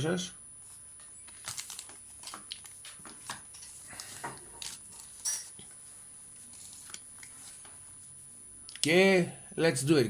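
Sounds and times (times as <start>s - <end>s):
cards rustling and clicking: 1.2s - 5.6s, 6.4s - 7.8s.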